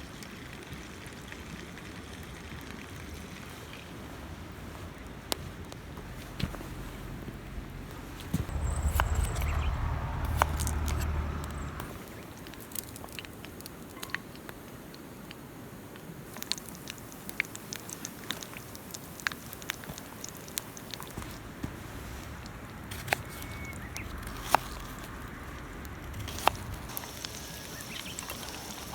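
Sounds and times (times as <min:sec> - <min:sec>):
wood fire crackling: 0:03.4 - 0:28.9
wind rumble on microphone: 0:04.6 - 0:12.0.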